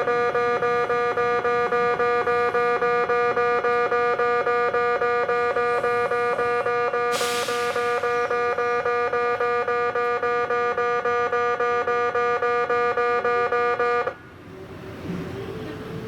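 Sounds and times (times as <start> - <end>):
level crossing warning bell: 0.0 - 7.2
brief hiss: 7.1 - 8.2.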